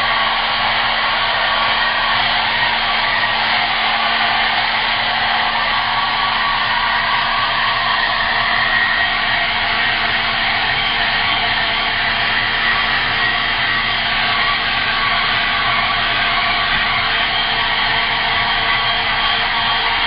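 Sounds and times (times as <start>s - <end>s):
hair dryer running: 0.0s - 20.0s.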